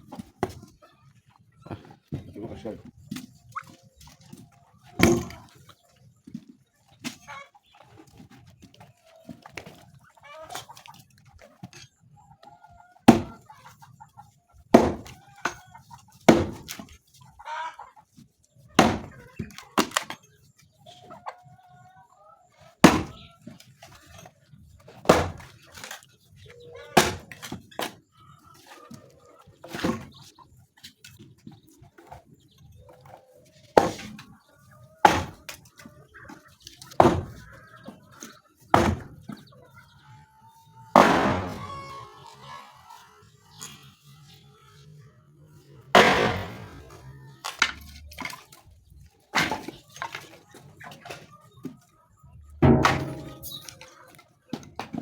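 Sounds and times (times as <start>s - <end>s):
chickens clucking: 0.0s - 55.0s
loud sharp knocks: 41.0s - 41.9s, 46.0s - 47.0s.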